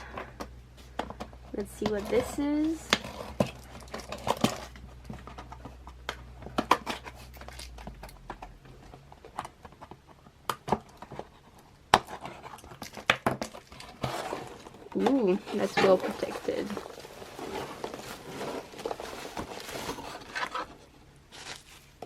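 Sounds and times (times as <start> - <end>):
low background hum: 0.0 - 22.0
packaging crinkling and tearing: 12.0 - 22.0.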